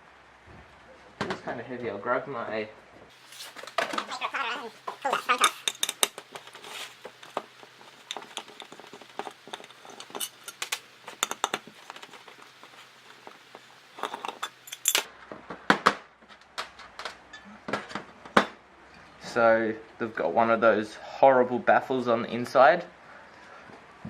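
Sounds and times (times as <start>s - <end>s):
metal clinks and knocks: 4.9s - 15.1s.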